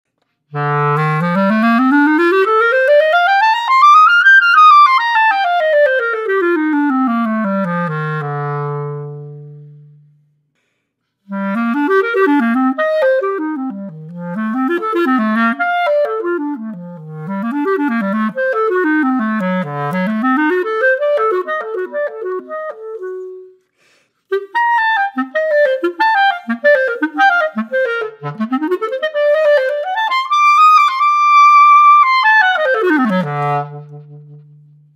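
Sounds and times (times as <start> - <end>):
solo clarinet playing: 0.5 - 10.2, 11.2 - 34.9.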